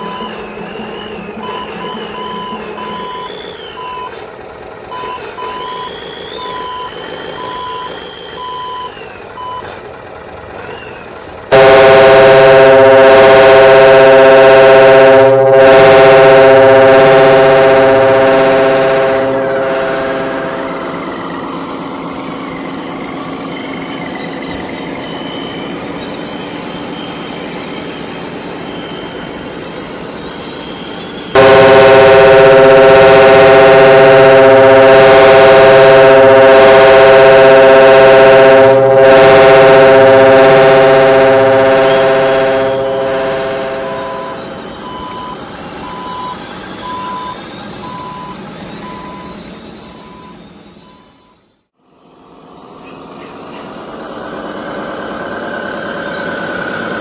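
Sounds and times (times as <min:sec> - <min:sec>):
model truck motor whine: 0:00.0 - 0:51.6
multi-tone horn blare: 0:01.4 - 0:03.4, 0:11.5 - 0:25.8, 0:31.3 - 0:51.3
motor noise: 0:31.3 - 0:45.4.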